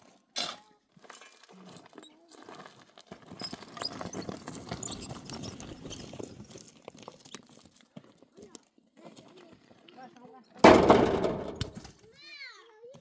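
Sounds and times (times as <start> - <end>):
hooves on stony ground: 0.9 - 9.8.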